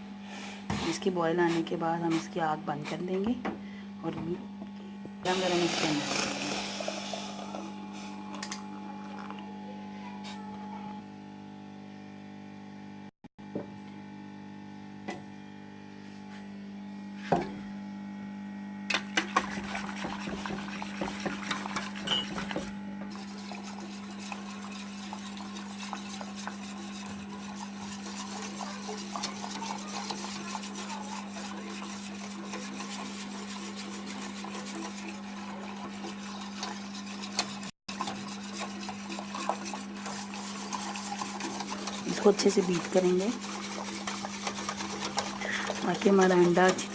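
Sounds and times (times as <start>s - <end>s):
whisk scraping in a jug: 0.7s - 3.2s, 5.2s - 9.3s, 18.9s - 46.9s
kitchen utensils knocking: 22.0s - 22.6s.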